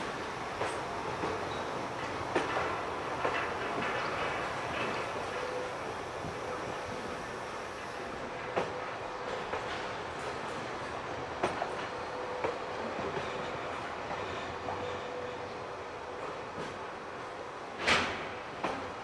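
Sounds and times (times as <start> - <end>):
wheels clacking over rail joints: 0.0 - 5.8
train rolling on rails: 0.0 - 19.0.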